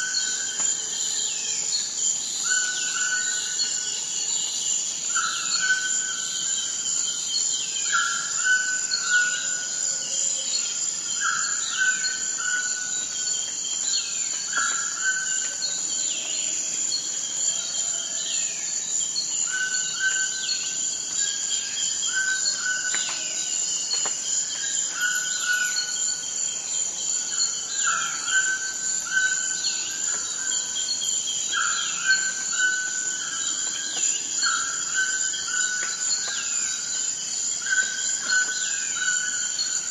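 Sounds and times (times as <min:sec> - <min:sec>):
high insect drone: 0:00.0 - 0:39.9.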